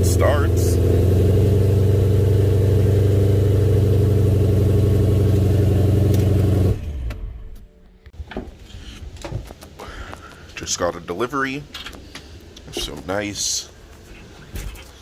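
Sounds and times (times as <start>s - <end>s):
car engine idling: 0.0s - 7.8s.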